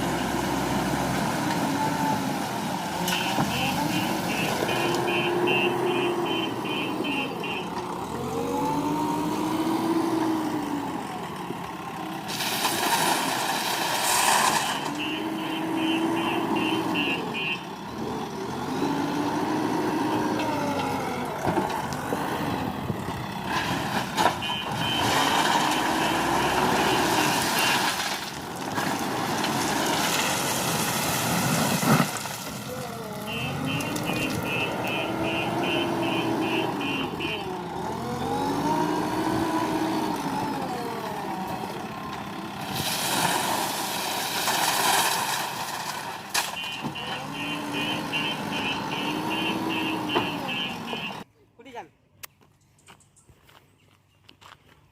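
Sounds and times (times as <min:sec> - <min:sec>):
backhoe engine revving: 0:00.0 - 0:51.3
reversing alarm beeping: 0:33.3 - 0:37.5.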